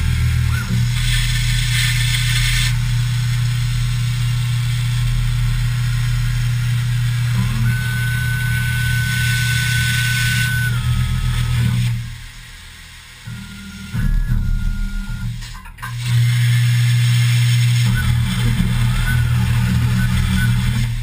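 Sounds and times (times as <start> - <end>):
machine low hum: 0.0 - 21.0
plasma cutter hiss: 0.1 - 16.3
high whistle: 7.4 - 11.9, 13.2 - 15.6, 17.8 - 21.0.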